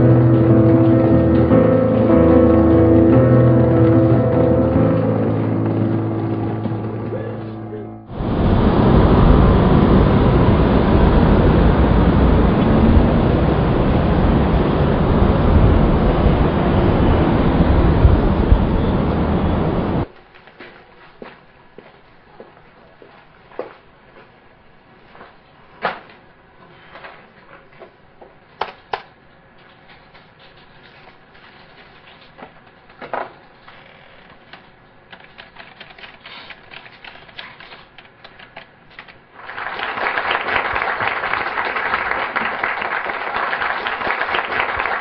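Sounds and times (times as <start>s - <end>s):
audience applause: 0.0s - 20.1s, 39.4s - 45.0s.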